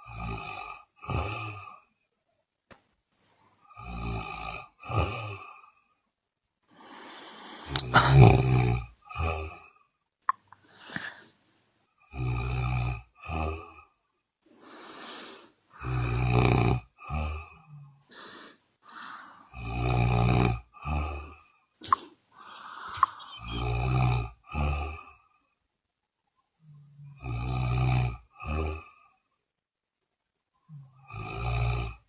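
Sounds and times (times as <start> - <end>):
woman snoring loudly: 0.0 - 1.7, 3.7 - 5.6, 6.7 - 9.6, 12.1 - 13.8, 14.5 - 25.2, 26.8 - 29.0, 30.7 - 32.0
soft breaths: 3.2 - 3.7, 6.7 - 8.9, 10.4 - 11.8, 14.5 - 16.3, 17.4 - 19.8, 21.0 - 23.9
sharp clicks: 22.9 - 23.4.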